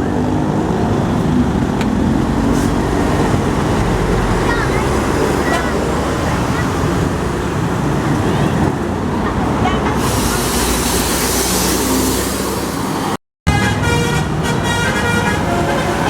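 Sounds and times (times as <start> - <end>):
large vehicle passing: 0.0 - 16.0
multi-tone bus horn: 8.3 - 12.1, 13.5 - 16.0.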